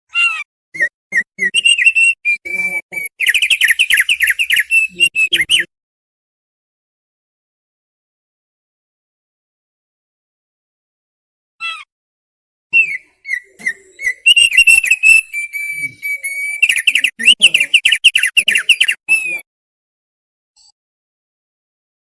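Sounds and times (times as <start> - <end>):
bird singing whistled notes: 0.8 - 5.7, 12.8 - 19.4.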